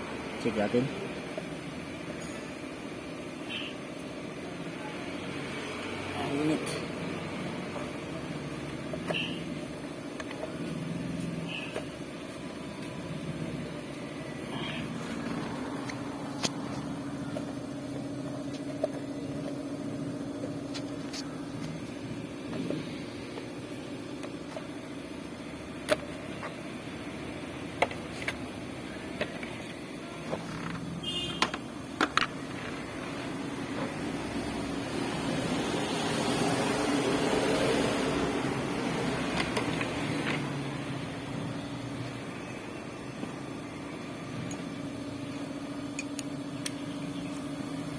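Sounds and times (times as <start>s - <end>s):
mechanical hum: 0.0s - 47.9s.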